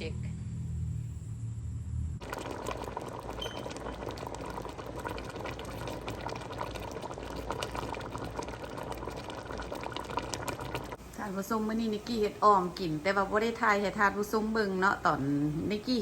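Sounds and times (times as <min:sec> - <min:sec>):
soup bubbling in a pot: 0:02.2 - 0:16.0.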